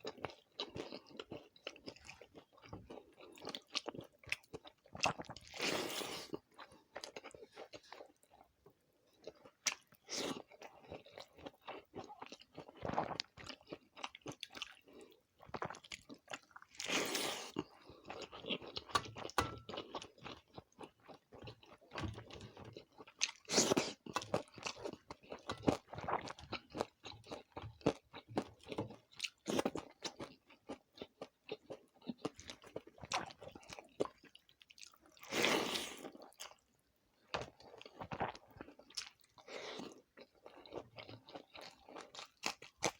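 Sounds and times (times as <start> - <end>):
wet chewing and mouth smacks: 9.2 - 35.3.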